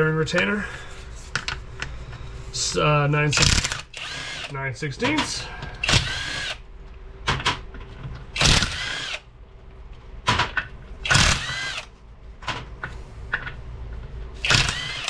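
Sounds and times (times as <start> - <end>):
power driver spinning bolts: 3.3 - 6.6, 8.4 - 9.2, 11.0 - 11.9, 14.4 - 15.0
sharp metal clicks: 3.4 - 4.6, 14.4 - 15.0.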